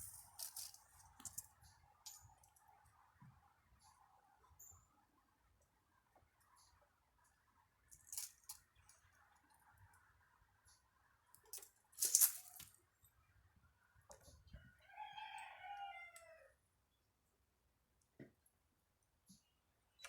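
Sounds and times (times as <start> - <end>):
rooster crowing: 14.6 - 16.6.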